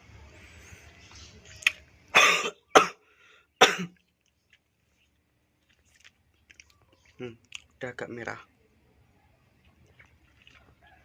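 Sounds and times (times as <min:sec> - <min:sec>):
person coughing hard: 0:02.2 - 0:03.0, 0:03.6 - 0:04.0.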